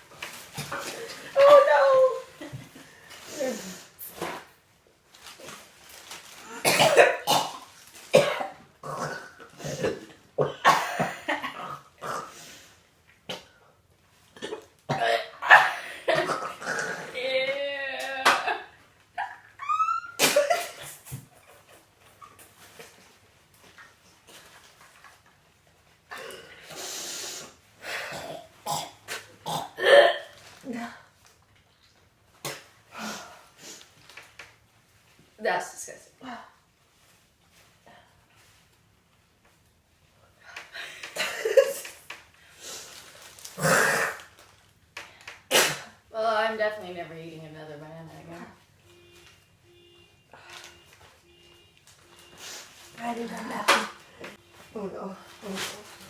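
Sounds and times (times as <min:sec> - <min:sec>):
person retching and gagging: 0:00.5 - 0:01.6, 0:06.4 - 0:12.4, 0:14.4 - 0:17.3, 0:19.6 - 0:22.3, 0:28.0 - 0:30.3, 0:32.4 - 0:33.1, 0:43.5 - 0:44.4, 0:45.5 - 0:46.0.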